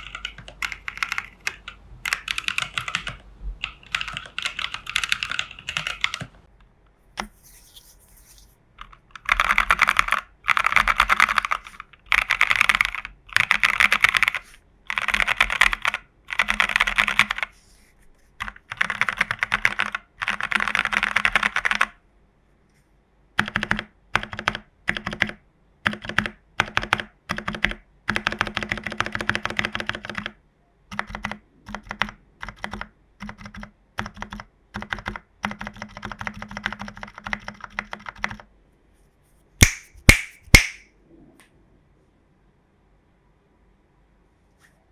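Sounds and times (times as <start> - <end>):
mechanical keyboard typing: 0.0 - 6.4, 8.8 - 17.5, 18.4 - 22.0, 23.4 - 38.5.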